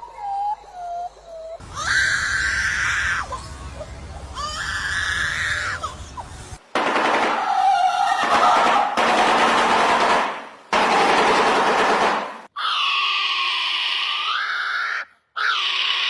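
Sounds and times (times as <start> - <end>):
bird screaming: 1.6 - 6.2, 7.4 - 9.0, 12.5 - 16.0.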